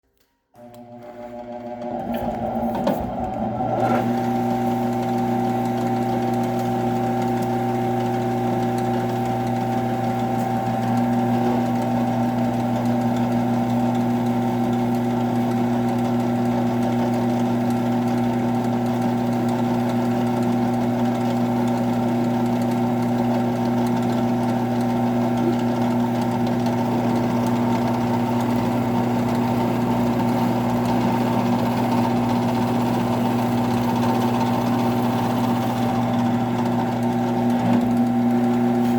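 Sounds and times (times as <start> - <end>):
drill press motor hum: 0.6 - 38.9.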